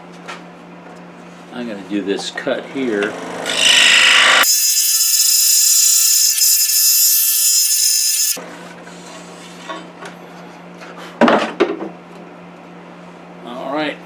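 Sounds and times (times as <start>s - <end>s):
scroll saw whining: 3.3s - 8.4s.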